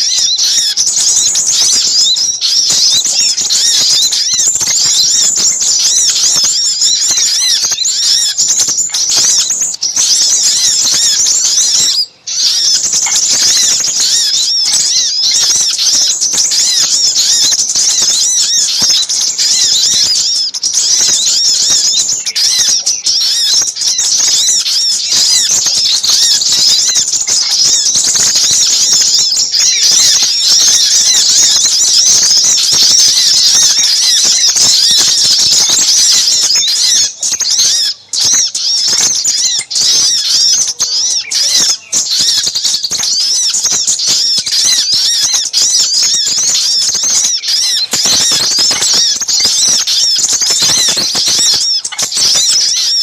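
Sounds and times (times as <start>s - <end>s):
small birds chirping and trilling: 0.0s - 53.0s.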